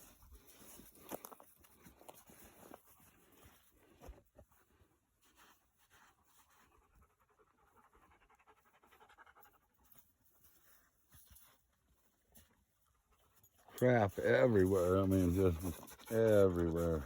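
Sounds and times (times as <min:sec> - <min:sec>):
dog panting: 0:06.6 - 0:10.1, 0:13.0 - 0:17.0.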